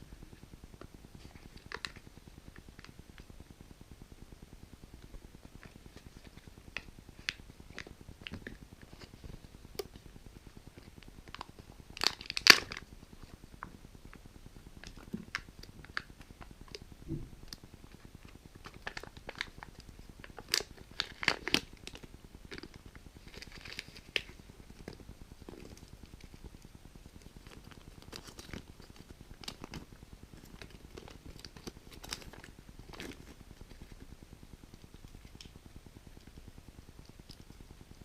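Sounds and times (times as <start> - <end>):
packaging crinkling: 10.8 - 12.9.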